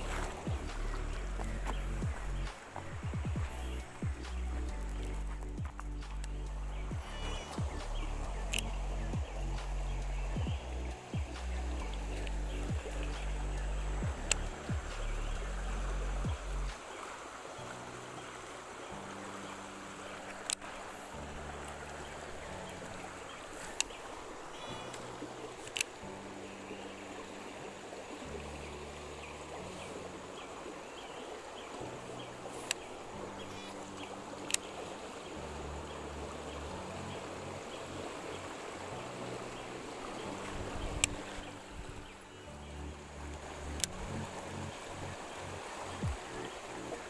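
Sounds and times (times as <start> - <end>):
river water rushing: 0.0 - 47.0
sharp clicks: 4.2 - 6.6, 7.7 - 8.8, 25.6 - 26.0, 34.4 - 34.7, 43.7 - 44.0
sharp click: 25.6 - 25.9.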